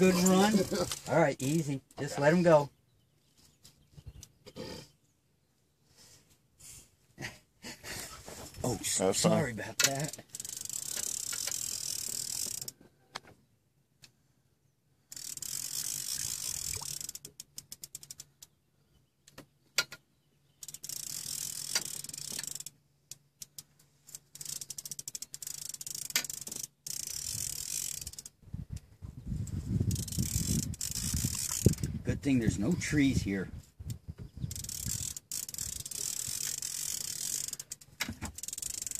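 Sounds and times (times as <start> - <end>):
fishing reel drag buzzing: 0.0 - 1.6, 9.9 - 12.8, 15.1 - 18.3, 20.6 - 28.4, 29.8 - 32.0, 34.4 - 38.9.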